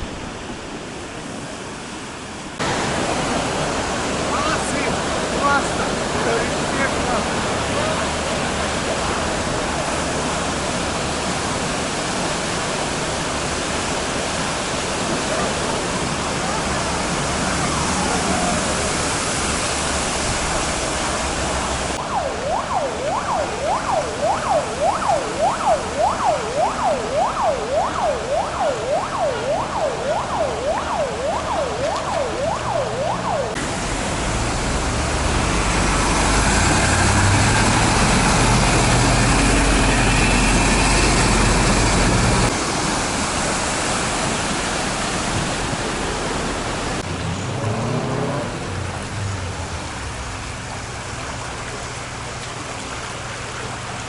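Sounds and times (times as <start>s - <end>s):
steady rushing noise: 0.0s - 47.7s
street noise: 0.0s - 54.0s
emergency siren yelping: 22.0s - 33.6s.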